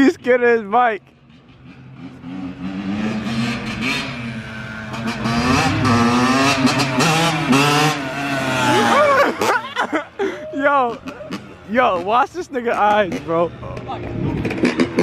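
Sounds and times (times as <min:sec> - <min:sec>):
dirt bike engine revving: 0:01.5 - 0:09.8.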